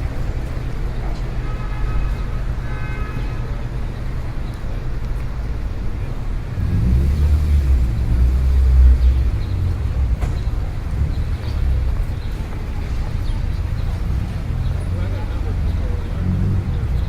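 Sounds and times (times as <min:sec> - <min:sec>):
road traffic: 0:00.0 - 0:17.0
vehicle engine rumble passing close: 0:03.4 - 0:17.0.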